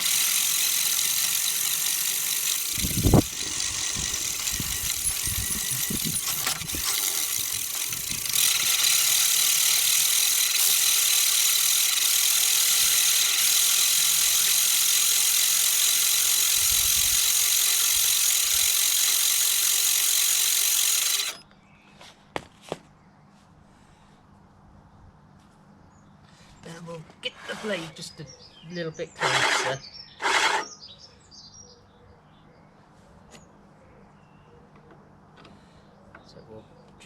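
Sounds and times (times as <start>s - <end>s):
mower cylinder grinding: 0.0s - 21.4s, 29.2s - 30.7s.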